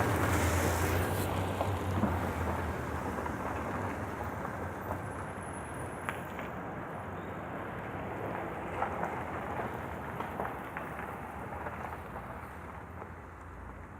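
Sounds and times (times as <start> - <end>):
water gushing from a pipe: 0.0 - 1.4.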